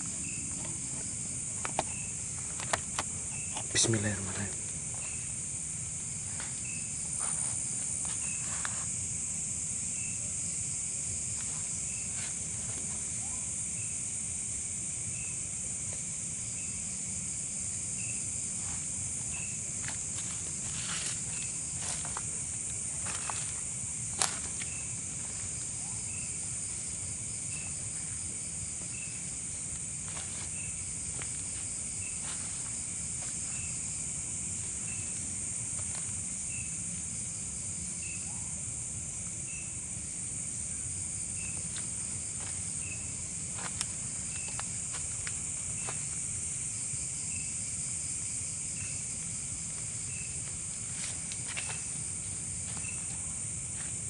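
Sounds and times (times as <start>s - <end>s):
crackles and steps: 0.0s - 5.3s, 6.2s - 9.0s, 11.3s - 13.2s, 18.5s - 25.8s, 27.8s - 33.9s, 34.5s - 37.0s, 41.5s - 46.3s, 49.1s - 54.0s
insect chirp: 0.0s - 54.0s
insects trilling: 0.0s - 54.0s.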